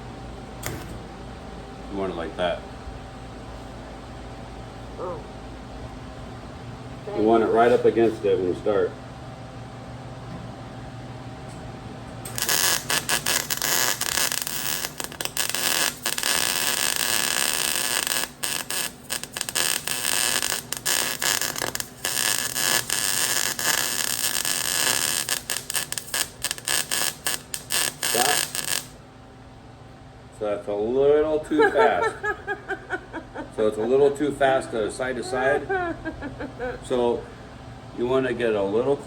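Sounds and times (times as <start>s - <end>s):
welder arc crackling: 0.6s - 1.0s, 12.3s - 29.0s.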